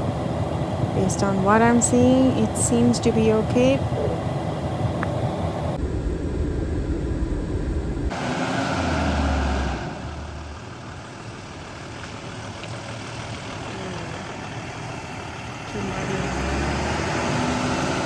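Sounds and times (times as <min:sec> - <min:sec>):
engine idling: 0:00.0 - 0:18.0.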